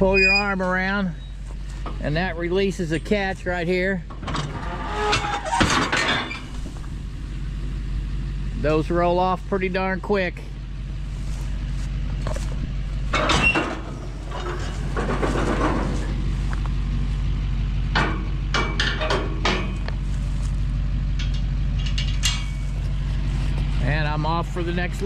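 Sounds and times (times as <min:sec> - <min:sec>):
vehicle engine idling: 0:00.0 - 0:25.0
metallic clanks and knocks: 0:04.1 - 0:06.9, 0:12.2 - 0:16.2, 0:17.9 - 0:20.0, 0:21.1 - 0:23.0.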